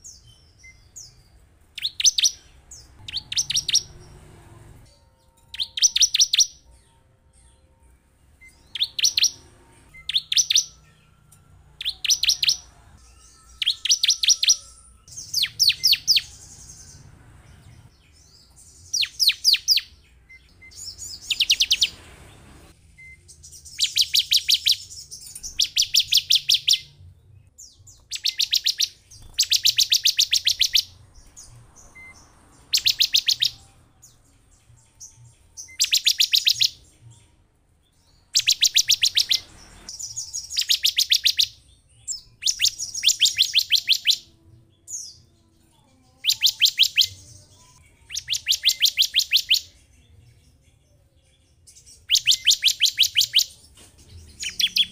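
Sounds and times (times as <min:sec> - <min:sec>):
bird song of fast high notes: 0:00.0 - 0:44.4, 0:46.1 - 0:50.7, 0:51.8 - 0:54.9.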